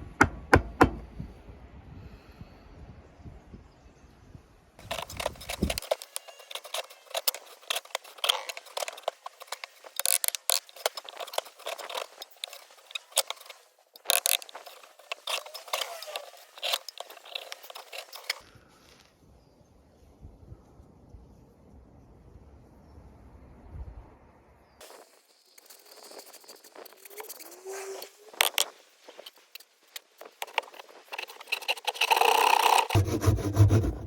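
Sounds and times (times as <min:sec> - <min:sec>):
tool cutting golf ball: 0:30.4 - 0:34.0.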